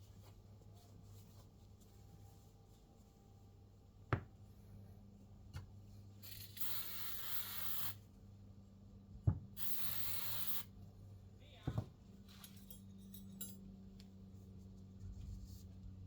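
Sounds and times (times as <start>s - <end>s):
long air hisses: 6.2s - 8.0s, 9.6s - 10.7s.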